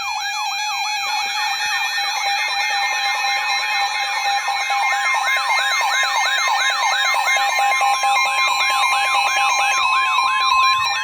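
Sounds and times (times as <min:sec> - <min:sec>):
electronic siren yelping: 0:04.9 - 0:11.0.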